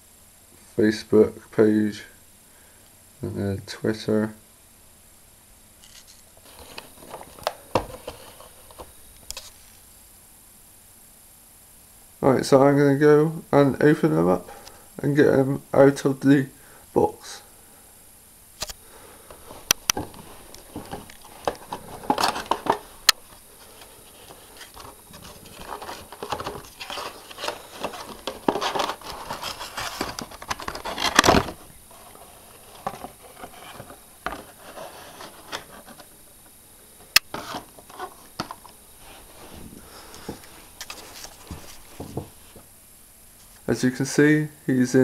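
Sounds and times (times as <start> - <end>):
plastic tray crinkling: 19.3 - 36.1
cardboard box clicks and scraping: 19.7 - 23.4, 24.2 - 36.1.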